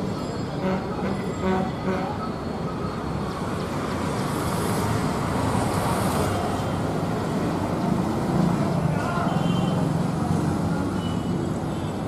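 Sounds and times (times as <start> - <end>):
road traffic noise: 0.0 - 12.0.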